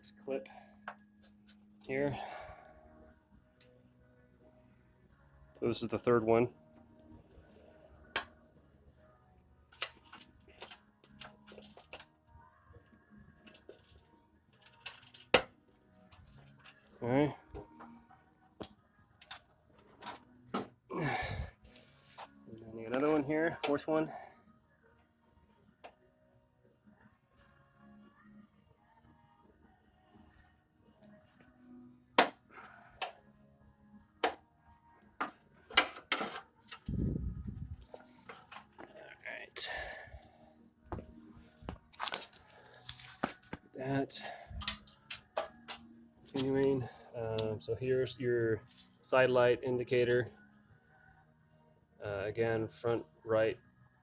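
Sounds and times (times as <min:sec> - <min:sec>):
plastic clips clicking and rattling: 0:09.8 - 0:12.1, 0:14.6 - 0:15.5, 0:35.2 - 0:36.9, 0:42.0 - 0:43.6
low rumble: 0:36.9 - 0:37.8.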